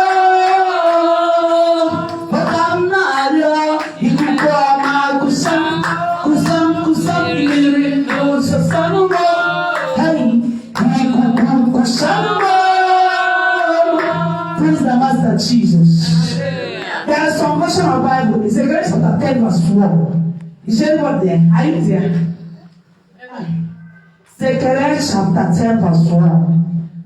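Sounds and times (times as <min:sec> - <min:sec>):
person singing a chant: 0:00.0 - 0:14.9, 0:16.1 - 0:17.2.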